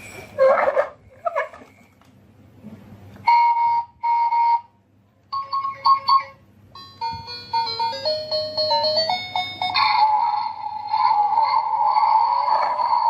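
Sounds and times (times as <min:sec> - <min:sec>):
electronic toy beeps: 0:05.4 - 0:10.9.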